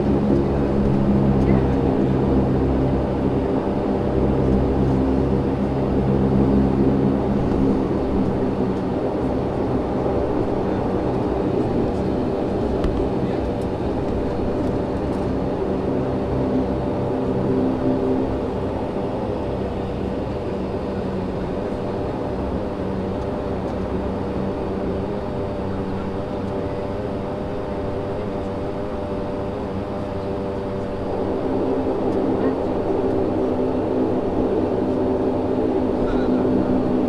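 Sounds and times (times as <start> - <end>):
turboprop engines humming: 0.0 - 37.0.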